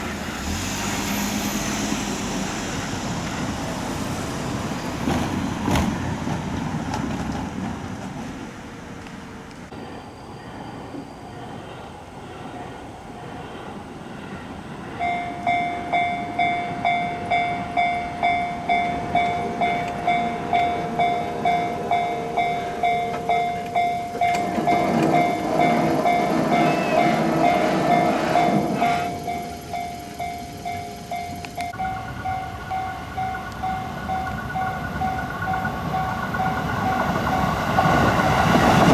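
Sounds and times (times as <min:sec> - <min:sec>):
level-crossing warning bell: 0:14.0 - 0:38.9
train wheels knocking on rails: 0:17.2 - 0:38.9.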